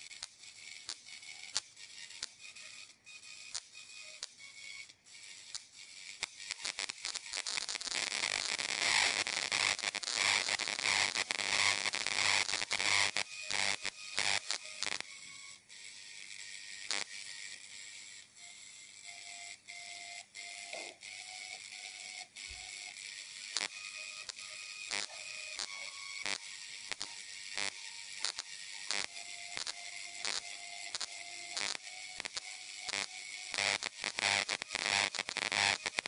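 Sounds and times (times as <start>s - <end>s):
plasma arc crackling: 6.2s - 15.0s, 16.9s - 17.1s, 23.5s - 23.8s, 24.9s - 36.0s
plasma arc hissing: 31.0s - 36.0s.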